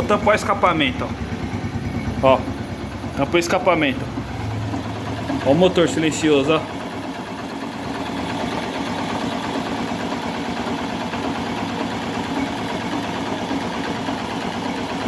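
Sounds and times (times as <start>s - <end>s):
motorcycle engine idling: 0.0s - 15.0s.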